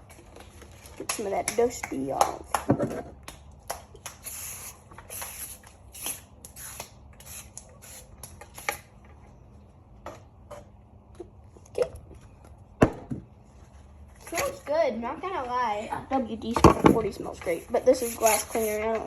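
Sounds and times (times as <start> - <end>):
spray bottle hissing: 4.2 - 8.8, 18.0 - 18.9.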